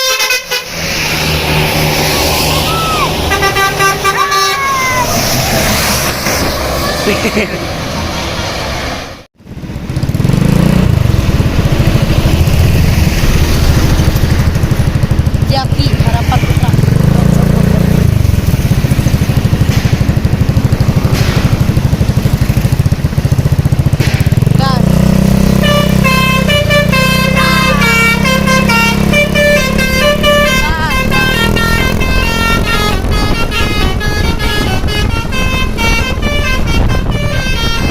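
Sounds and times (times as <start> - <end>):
bus musical horn playing a tune: 0.0 - 1.1, 2.6 - 5.2, 25.5 - 37.9
vehicle engine running: 9.4 - 37.9.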